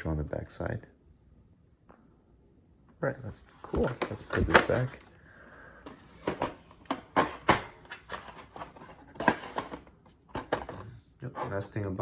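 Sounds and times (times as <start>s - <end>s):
toy box knocks and rustles: 3.7s - 5.1s, 5.8s - 10.9s.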